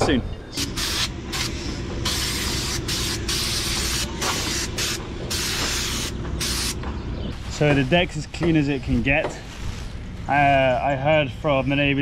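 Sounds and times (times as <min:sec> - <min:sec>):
steady low hum: 0:00.0 - 0:12.0
compressed air blow gun hissing: 0:00.6 - 0:06.8.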